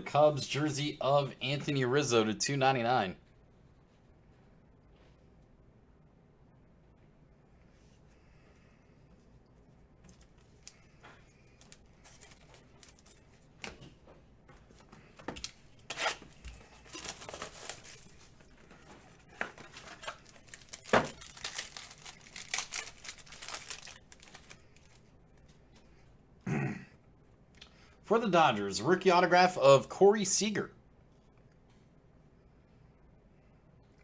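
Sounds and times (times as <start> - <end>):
card packaging tearing and crinkling: 15.4 - 18.7, 19.3 - 25.0.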